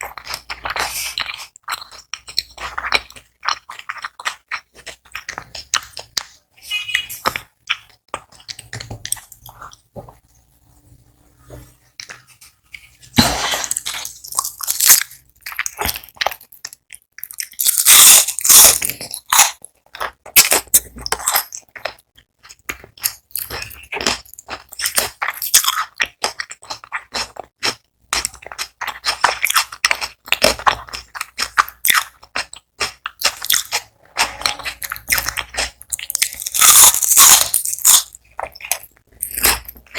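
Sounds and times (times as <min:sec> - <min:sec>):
onion rings crunching: 0:12.0 - 0:39.9.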